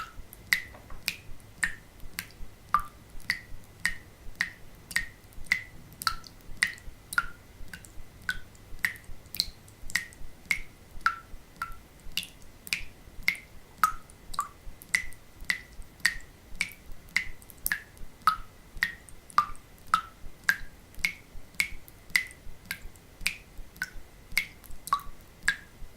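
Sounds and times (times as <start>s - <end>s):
water dripping into a sink: 0.0s - 25.8s.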